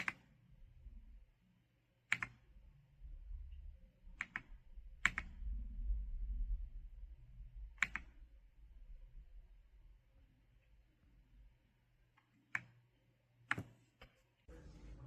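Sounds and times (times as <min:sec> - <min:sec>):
low rumble: 0:00.5 - 0:01.3, 0:02.5 - 0:11.6, 0:14.5 - 0:15.0.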